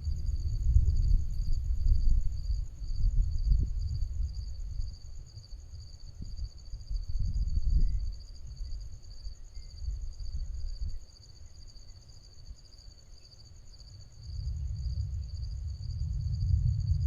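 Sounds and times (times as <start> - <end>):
insects chirping chorus: 0.0 - 17.0
low rumble: 14.1 - 17.0.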